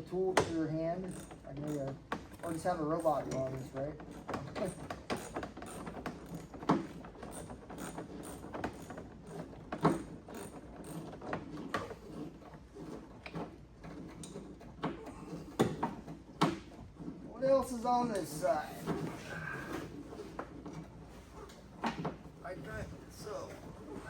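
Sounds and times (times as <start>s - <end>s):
hand ratchet clicking: 1.0s - 11.8s.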